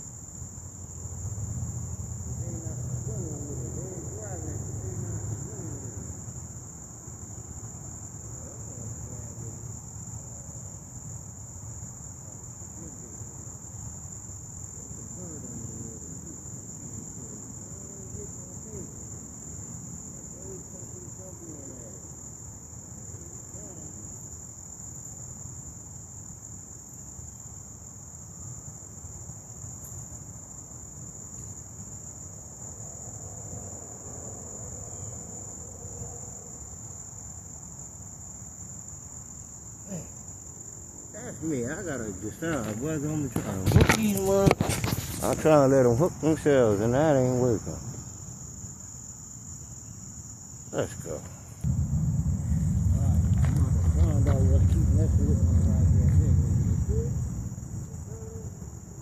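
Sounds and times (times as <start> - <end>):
crickets chirping: 0.0 - 59.0
low rumble: 51.6 - 59.0.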